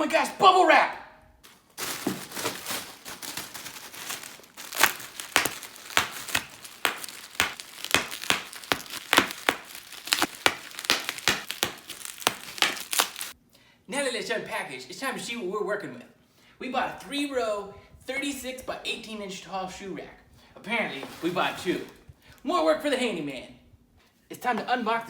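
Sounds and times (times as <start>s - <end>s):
bubble wrap crinkling: 1.4s - 13.4s
bubble wrap tearing: 1.5s - 13.4s.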